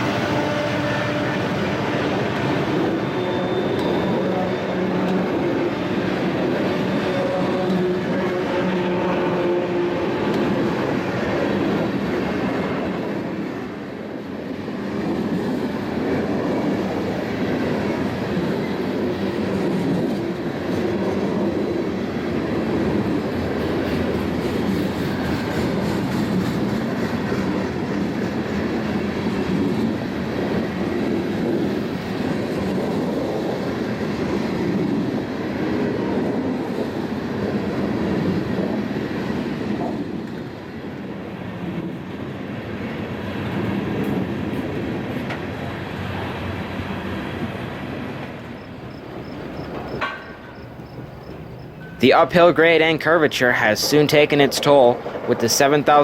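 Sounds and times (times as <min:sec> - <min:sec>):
train wheels clacking over rail joints: 0:22.6 - 0:33.2, 0:48.1 - 0:52.6, 0:53.2 - 0:56.0.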